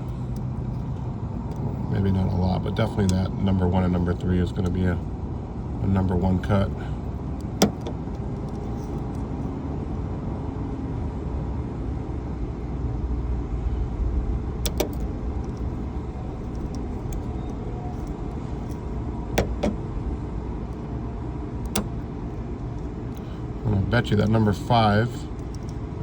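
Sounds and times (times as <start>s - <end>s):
vehicle engine rumble: 0.0s - 26.0s
sharp clicks: 21.7s - 22.1s.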